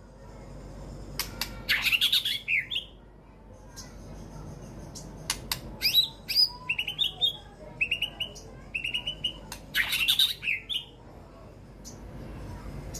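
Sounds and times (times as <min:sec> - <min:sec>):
bird singing: 0:01.7 - 0:03.0, 0:05.8 - 0:11.0.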